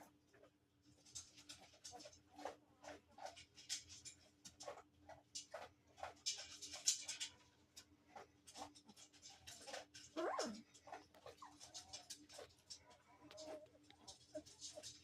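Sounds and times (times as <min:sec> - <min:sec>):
puppies scuffling: 0:00.0 - 0:15.0
puppy whining: 0:09.6 - 0:15.0.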